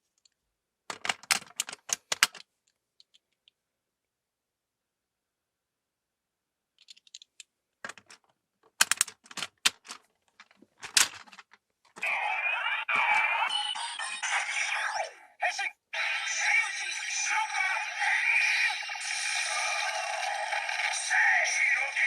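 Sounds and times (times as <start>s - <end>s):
plastic toy clicks and snaps: 8.8s - 10.0s
toy electronic sound effect: 12.0s - 22.0s.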